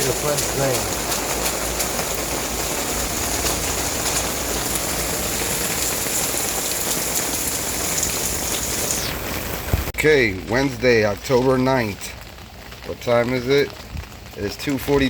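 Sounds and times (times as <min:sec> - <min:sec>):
drops ticking nearby: 0:00.0 - 0:09.0
rain splashing on wet ground: 0:00.0 - 0:15.0.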